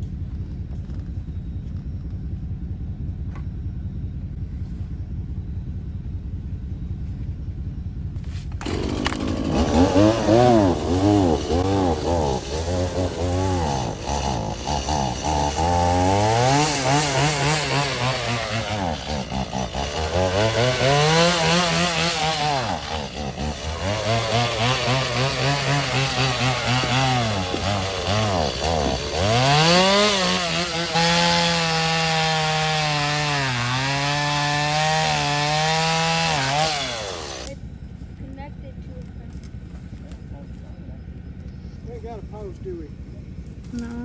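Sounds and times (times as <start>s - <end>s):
chainsaw revving and cutting wood: 8.5s - 37.6s.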